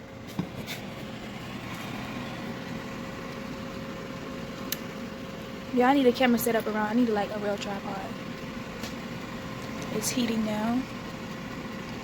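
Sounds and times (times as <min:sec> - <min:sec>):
kitchen appliance humming: 0:00.0 - 0:12.0.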